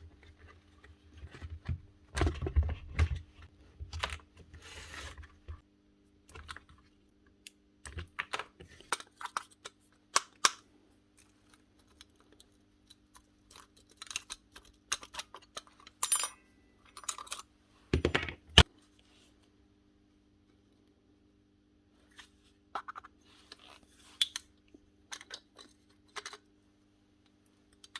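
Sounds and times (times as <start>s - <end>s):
metal tools clicking and clinking: 15.6s - 17.5s.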